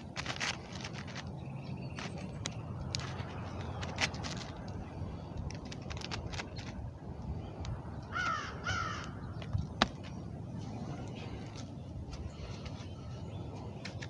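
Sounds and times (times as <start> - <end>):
harsh bird calls: 1.1 - 14.0.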